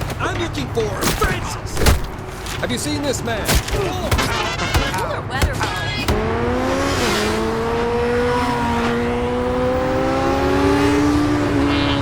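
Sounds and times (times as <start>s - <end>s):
road noise: 0.0s - 12.0s
car engine running hard: 4.9s - 12.0s.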